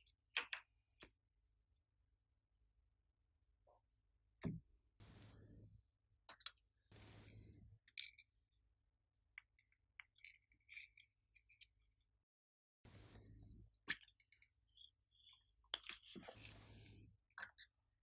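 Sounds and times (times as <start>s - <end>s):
small clicks and pops: 6.3s - 8.2s.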